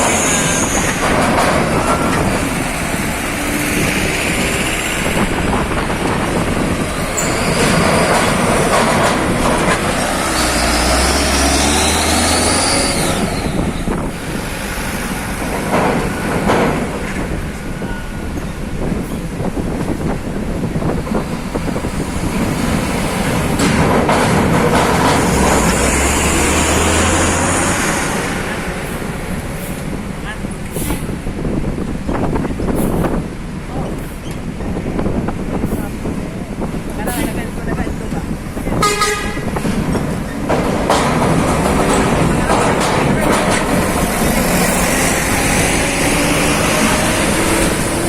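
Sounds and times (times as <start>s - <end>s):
diesel truck engines and road noise: 0.0s - 48.0s
faint high squeals: 7.2s - 8.1s.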